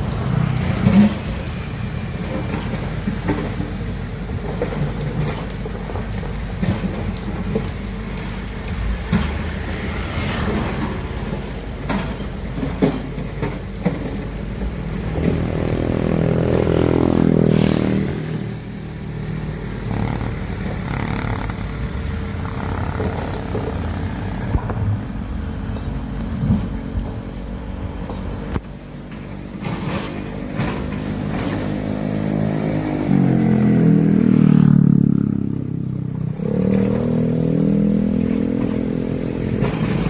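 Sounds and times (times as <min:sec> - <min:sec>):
diesel engine running: 0:00.0 - 0:35.1
clanks and knocks: 0:02.2 - 0:18.0, 0:28.0 - 0:32.6.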